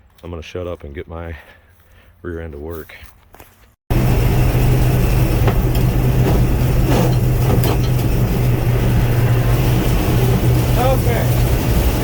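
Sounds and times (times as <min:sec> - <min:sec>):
combine harvester engine drone: 0:03.9 - 0:12.0.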